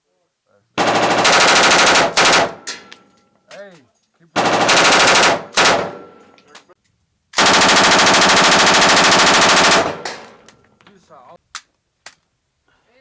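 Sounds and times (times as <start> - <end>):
machine gun automatic fire: 0.8 - 2.7, 4.4 - 6.1, 7.4 - 10.4
gunfire echo: 0.8 - 3.0, 4.4 - 6.4, 7.4 - 10.5.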